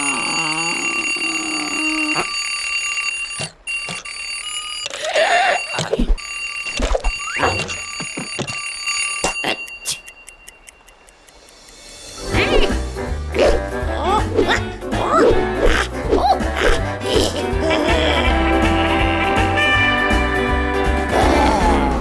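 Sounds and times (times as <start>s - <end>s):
cartoon alarm clock ringing: 0.0s - 12.6s, 17.8s - 21.3s.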